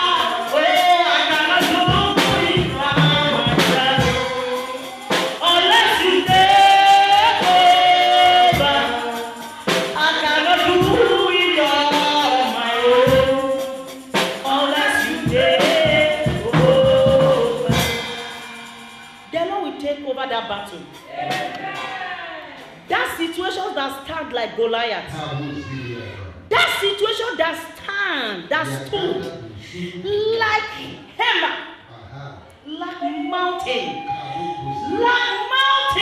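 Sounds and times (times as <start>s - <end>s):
group singing gospel song: 0.0s - 19.3s, 21.0s - 22.5s, 28.5s - 29.8s, 33.0s - 36.0s
percussion beat: 0.0s - 24.3s, 26.5s - 29.5s, 32.6s - 36.0s.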